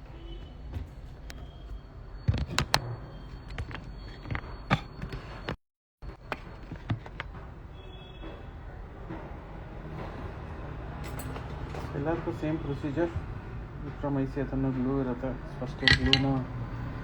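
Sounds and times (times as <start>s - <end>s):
small tools clicking and knocking: 15.7s - 16.5s.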